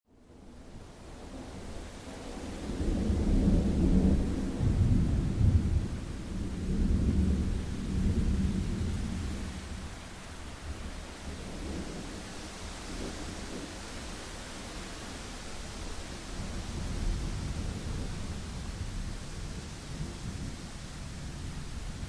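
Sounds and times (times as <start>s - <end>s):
steady rain: 0.1s - 22.0s
rolling thunder: 2.2s - 10.0s, 15.7s - 22.0s.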